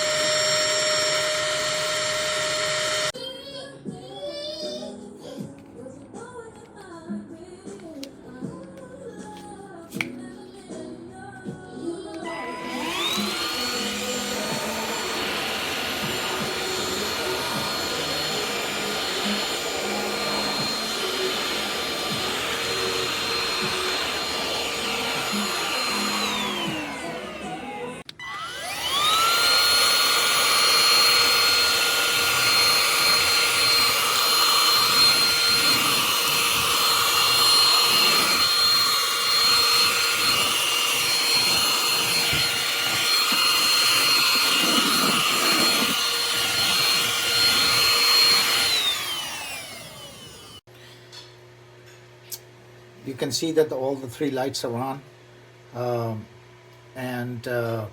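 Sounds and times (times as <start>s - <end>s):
handheld vacuum cleaner whine: 0.0s - 3.2s, 12.1s - 50.7s.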